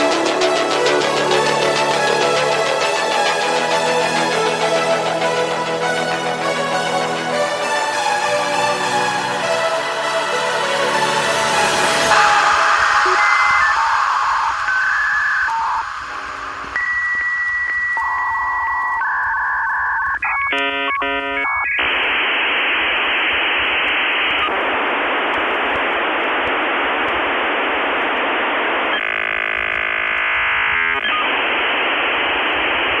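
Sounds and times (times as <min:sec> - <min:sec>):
dial-up modem connecting: 0:11.9 - 0:33.0.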